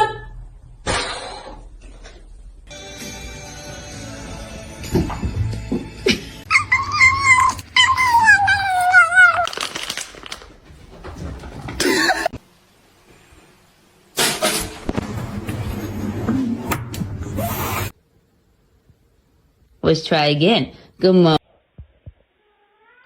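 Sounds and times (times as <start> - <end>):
cat meowing: 6.5 - 9.5, 22.4 - 23.0.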